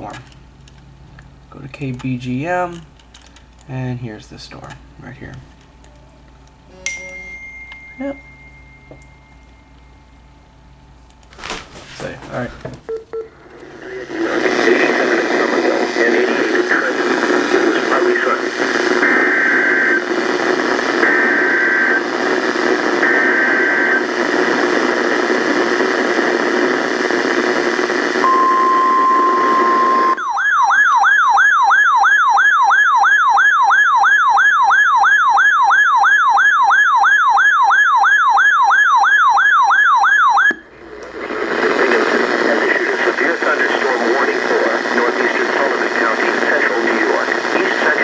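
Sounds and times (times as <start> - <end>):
steady alert tone: 5.9 - 10.4
radio static: 13.5 - 30.2, 40.7 - 48.0
warbling electronic siren: 28.2 - 40.7.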